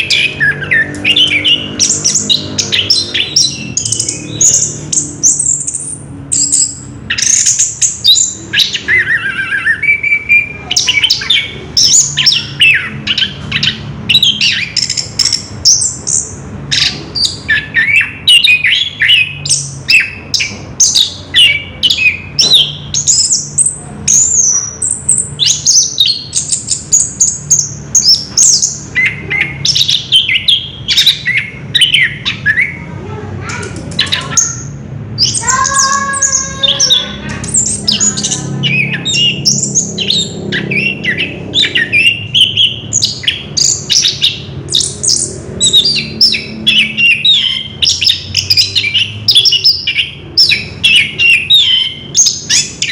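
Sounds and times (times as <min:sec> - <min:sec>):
thrush singing: 0:34.1 - 0:52.9.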